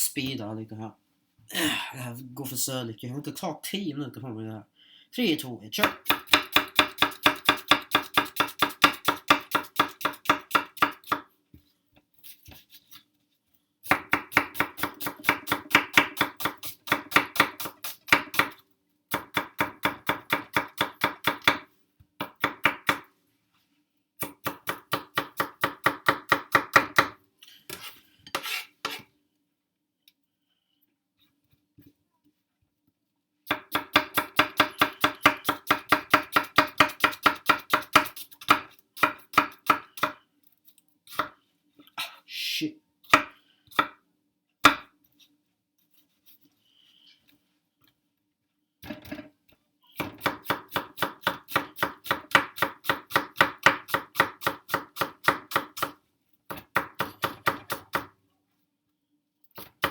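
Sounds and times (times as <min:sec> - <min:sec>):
knife chopping on cutting board: 0:05.8 - 0:11.3, 0:13.9 - 0:23.0, 0:33.5 - 0:40.2, 0:43.1 - 0:44.0, 0:44.6 - 0:44.9, 0:50.0 - 0:58.1, 0:59.6 - 0:59.9.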